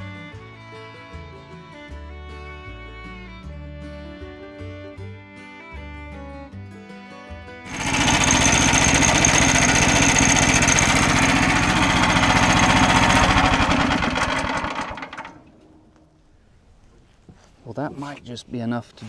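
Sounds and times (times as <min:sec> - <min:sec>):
small gasoline engine running hard: 0:07.7 - 0:15.8.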